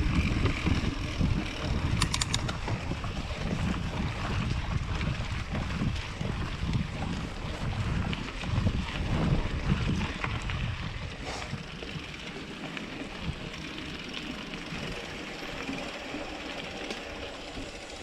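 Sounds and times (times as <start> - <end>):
wind buffeting microphone: 0.0 - 12.4
mountain bike rolling on dirt: 0.0 - 18.0
light clicks and rattles: 1.9 - 2.7.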